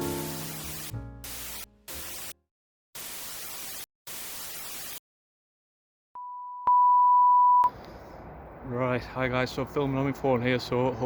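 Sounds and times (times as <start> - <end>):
piano music: 0.0 - 2.3
white noise static bursts: 0.0 - 2.4, 3.0 - 5.0.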